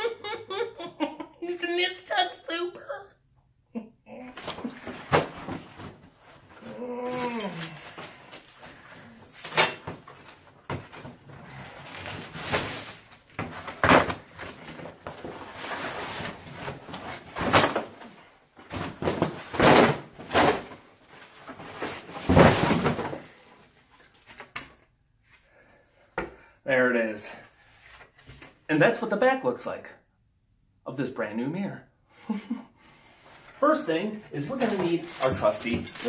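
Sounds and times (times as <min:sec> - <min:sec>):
scraping and rustling of packaging: 0:04.4 - 0:24.5, 0:34.4 - 0:36.0.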